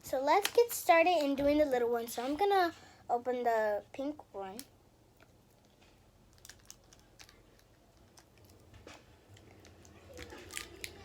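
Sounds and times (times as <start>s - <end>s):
toy package crinkling: 5.6s - 8.7s, 9.3s - 11.0s.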